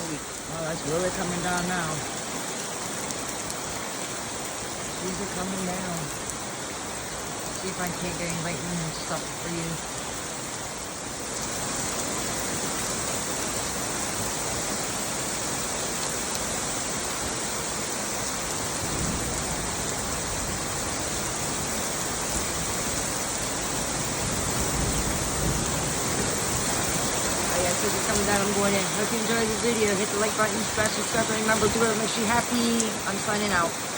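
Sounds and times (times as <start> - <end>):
heavy rain pouring: 0.0 - 33.9.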